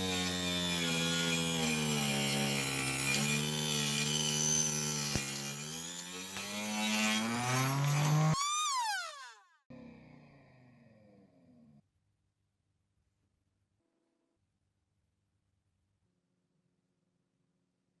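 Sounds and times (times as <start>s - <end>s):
circular saw blade whining: 0.0s - 9.4s.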